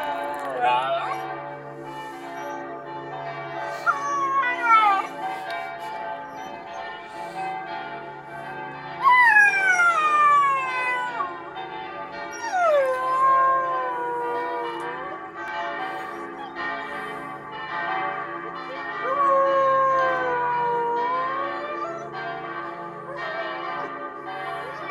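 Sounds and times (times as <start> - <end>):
dog howling: 0.0 - 2.7, 3.6 - 6.8, 9.0 - 11.4, 12.3 - 17.0, 19.0 - 24.9
church bells ringing: 0.0 - 24.9.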